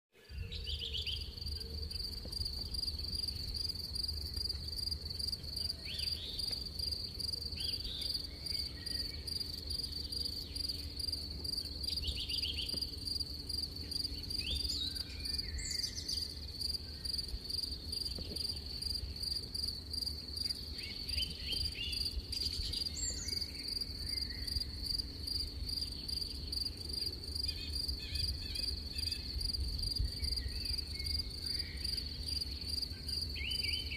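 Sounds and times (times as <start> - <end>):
crickets trilling: 0.3 - 33.9.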